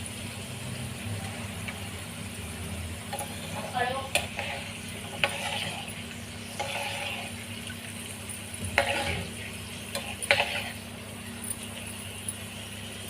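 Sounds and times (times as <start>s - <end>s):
seeds frying in oil: 0.0s - 13.0s
spoon scraping metal bowl: 3.1s - 7.4s, 8.7s - 10.8s.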